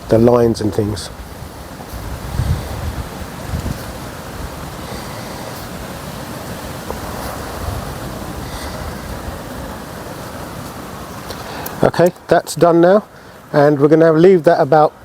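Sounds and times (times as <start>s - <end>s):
wind on microphone: 0.0s - 11.8s.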